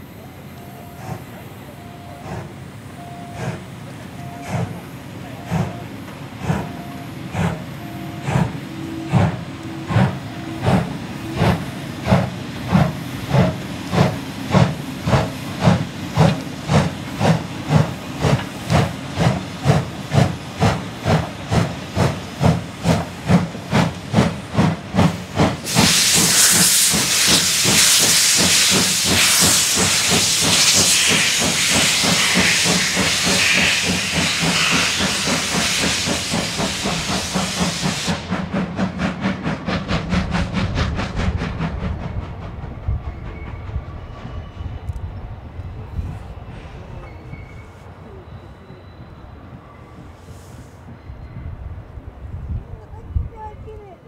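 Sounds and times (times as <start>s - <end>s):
loud hiss of steam: 0.0s - 41.7s
steam locomotive exhaust beats: 0.0s - 46.6s.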